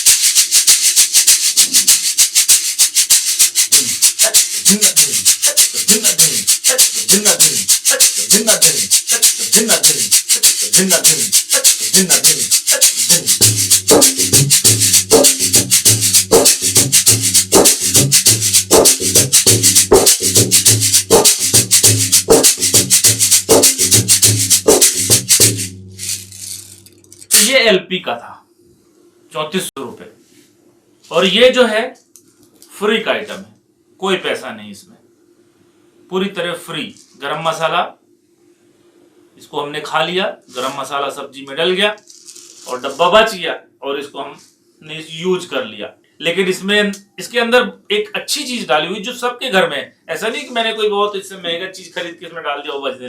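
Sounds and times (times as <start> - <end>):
shaker rasping rhythm: 0.0 - 27.6, 42.0 - 43.1
low bass pattern: 12.0 - 26.8
bass drum strokes gliding pitch: 13.2 - 26.4.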